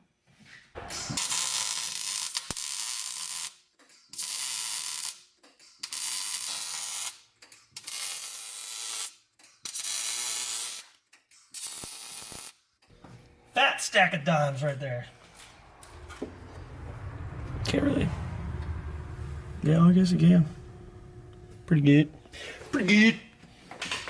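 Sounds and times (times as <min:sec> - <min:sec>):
welding arc crackling and hissing: 0:00.9 - 0:03.6, 0:04.2 - 0:10.9, 0:11.6 - 0:12.6.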